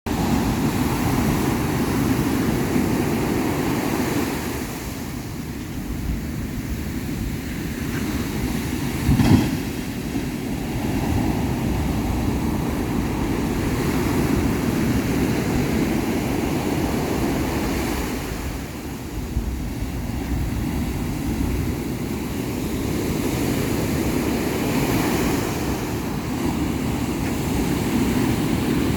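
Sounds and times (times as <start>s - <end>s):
ocean surf breaking: 0.1s - 28.9s
short thump: 9.0s - 9.7s.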